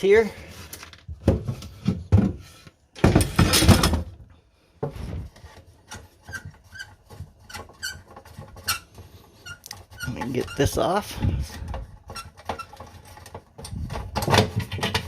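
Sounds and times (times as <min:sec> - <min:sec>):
short squeaks and clicks: 0:06.2 - 0:10.7.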